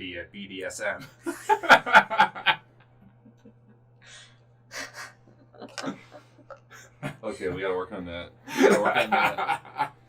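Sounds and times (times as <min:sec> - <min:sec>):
low electrical hum: 0:00.0 - 0:10.0
hearty laughter: 0:01.2 - 0:03.8, 0:08.5 - 0:10.0.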